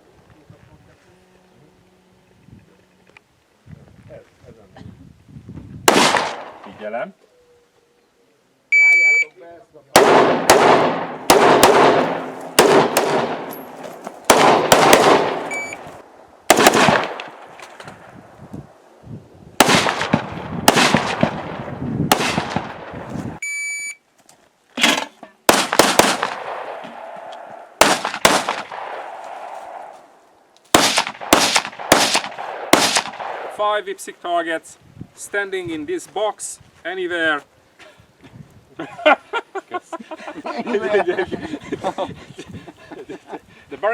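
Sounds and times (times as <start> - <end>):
rifle shots echoing: 5.9 - 6.8, 9.9 - 17.5, 19.6 - 23.0, 25.5 - 29.9, 30.7 - 33.6
short electronic beep: 8.7 - 9.4, 15.5 - 15.8, 23.4 - 24.0.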